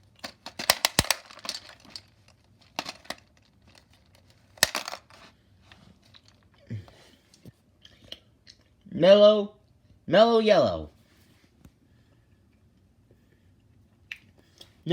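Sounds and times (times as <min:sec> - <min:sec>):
coins and plastic mechanism rattling: 0:00.0 - 0:05.3.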